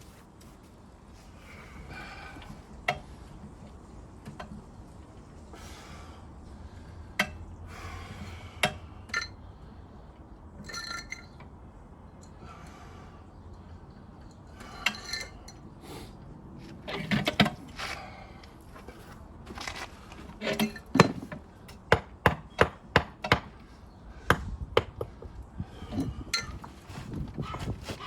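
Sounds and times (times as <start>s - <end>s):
tools clinking against bricks: 8.6s - 9.4s, 10.6s - 11.4s, 14.3s - 15.6s, 20.4s - 23.6s, 24.3s - 27.6s.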